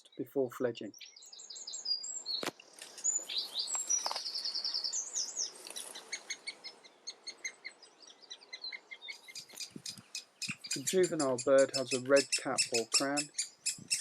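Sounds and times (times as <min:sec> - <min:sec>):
woodland birds singing: 0:00.0 - 0:14.0
bird rapid trill: 0:03.0 - 0:14.0
bird short calls: 0:03.1 - 0:14.0.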